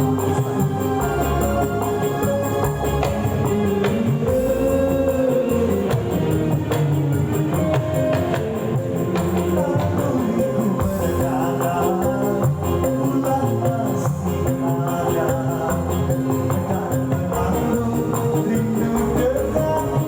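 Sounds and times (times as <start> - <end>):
band playing melody over bass: 0.0 - 20.0
tambourine beat: 0.0 - 20.0.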